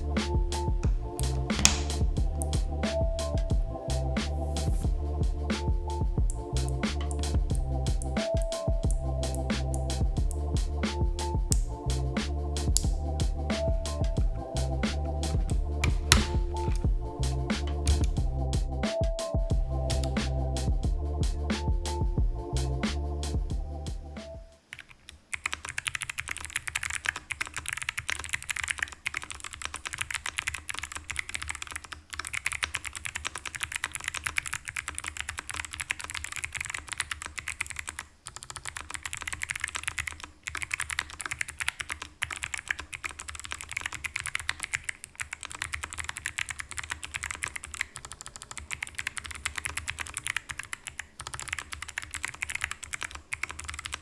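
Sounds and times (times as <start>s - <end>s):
mechanical keyboard typing clicks: 0.6s - 2.6s, 15.0s - 16.9s, 17.6s - 18.2s, 24.7s - 54.0s.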